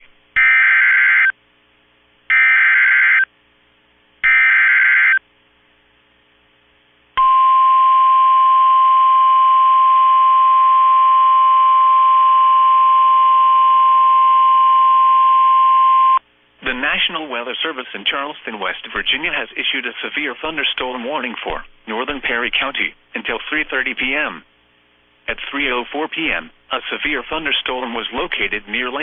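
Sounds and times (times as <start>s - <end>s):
steady warning alarm tone: 0.4s - 1.3s, 2.3s - 3.3s, 4.2s - 5.2s.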